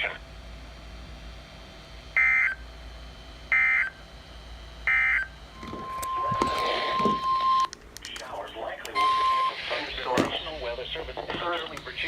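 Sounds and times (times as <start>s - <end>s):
steady single-pitch alert tone: 4.8s - 7.7s, 8.9s - 9.8s
radio hiss: 6.1s - 7.4s, 8.1s - 12.0s.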